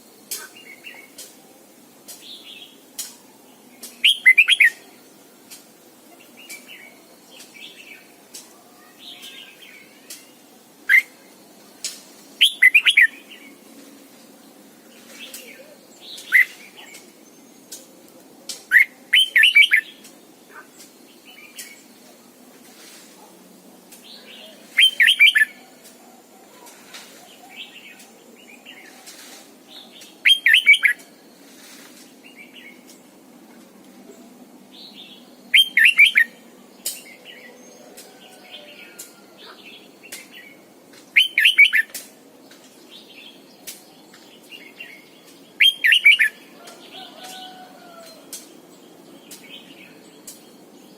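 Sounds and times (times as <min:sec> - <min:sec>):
bird chirps and calls: 0:03.8 - 0:04.8, 0:12.4 - 0:13.6, 0:15.0 - 0:17.8, 0:18.6 - 0:21.9, 0:24.0 - 0:25.6, 0:26.5 - 0:32.8, 0:34.9 - 0:40.5, 0:41.2 - 0:42.0, 0:43.0 - 0:48.5
bird warbling song phrases: 0:03.8 - 0:04.9, 0:12.4 - 0:13.6, 0:15.0 - 0:17.8, 0:18.6 - 0:21.9, 0:24.0 - 0:31.0, 0:34.9 - 0:40.6, 0:41.2 - 0:42.1, 0:43.0 - 0:48.5.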